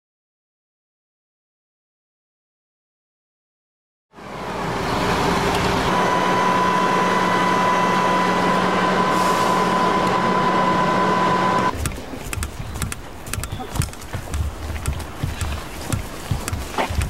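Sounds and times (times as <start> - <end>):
engine-driven equipment whining: 4.2 - 17.0.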